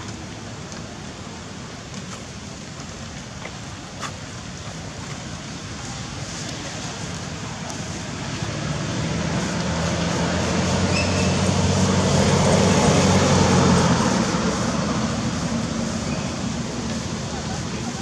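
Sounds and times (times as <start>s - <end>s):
motor vehicle passing: 7.9s - 18.0s.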